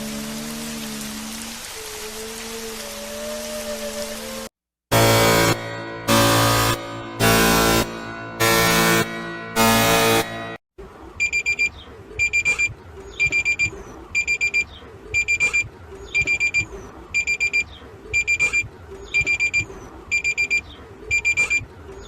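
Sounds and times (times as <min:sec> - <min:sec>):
high-pitched electronic beeps: 0:11.2 - 0:21.6.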